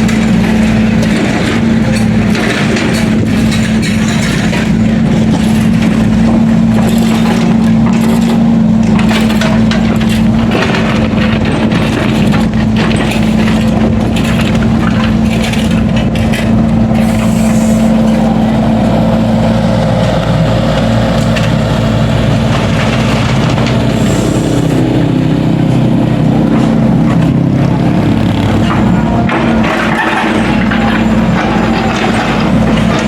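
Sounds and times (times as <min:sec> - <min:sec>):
construction machine engine: 0:00.0 - 0:33.0.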